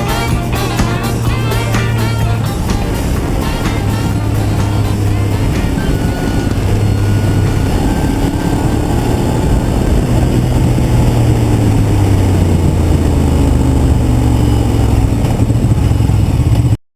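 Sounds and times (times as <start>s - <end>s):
motorcycle engine running: 0.0s - 16.7s.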